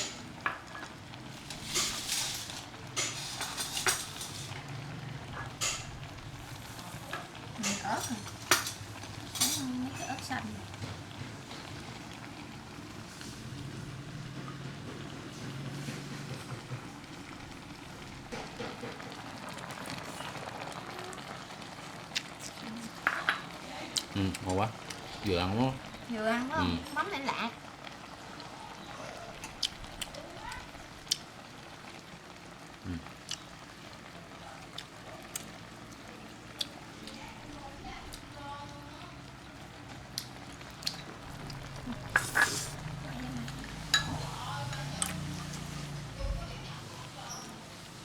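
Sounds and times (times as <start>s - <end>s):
rain falling: 0.0s - 48.0s
spoons clinking against bowls: 1.5s - 4.6s, 7.6s - 9.6s, 40.9s - 42.8s, 43.6s - 45.7s
low bubbling: 39.1s - 45.5s.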